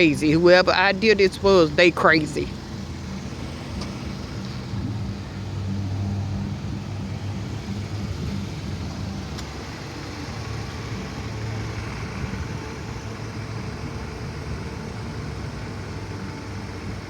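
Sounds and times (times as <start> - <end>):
car engines idling: 0.0 - 17.0
road noise: 0.0 - 17.0.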